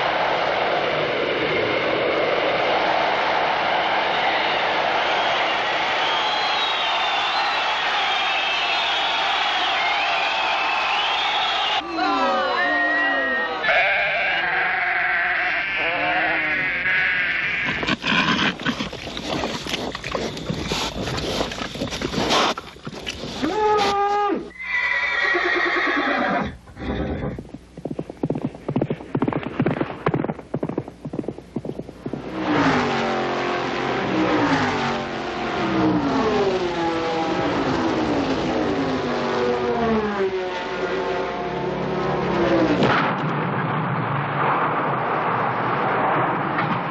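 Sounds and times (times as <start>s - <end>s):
sharp clicks and knocks: 27.8s - 32.0s.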